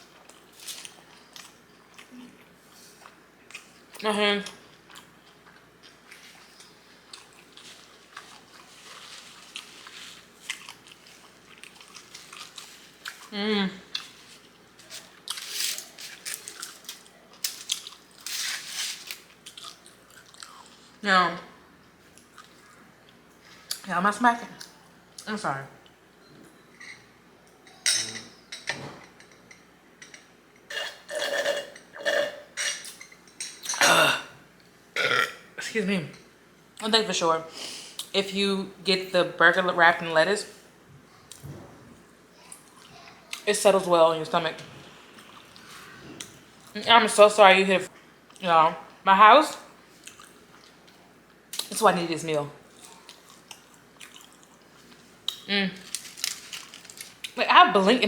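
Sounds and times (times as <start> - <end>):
wet crunching chewing: 0.2 - 13.3, 13.9 - 20.9, 49.9 - 51.0, 52.7 - 57.4
burp: 30.7 - 32.4, 35.0 - 35.5
wet chewing and lip smacking: 50.0 - 51.0, 52.7 - 55.5.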